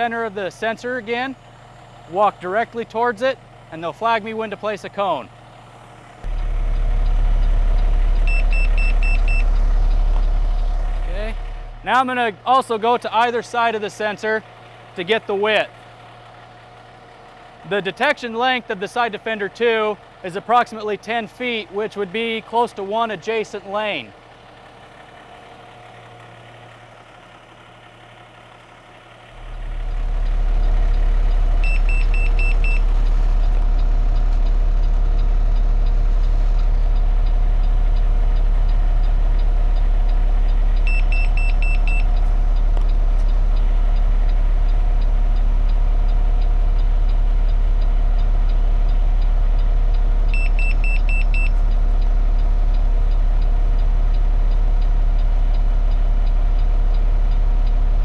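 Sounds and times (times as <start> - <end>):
truck engine idling: 0.0 - 58.0
quick high-pitched beeps: 8.3 - 9.5, 31.6 - 32.8, 40.9 - 42.1, 50.3 - 51.6.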